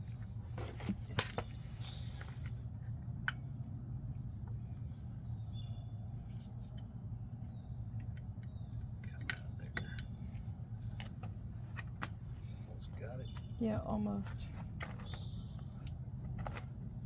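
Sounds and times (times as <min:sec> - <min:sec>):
steady low hum: 0:00.0 - 0:17.0
clicks of hand tools and metal parts: 0:14.7 - 0:16.8.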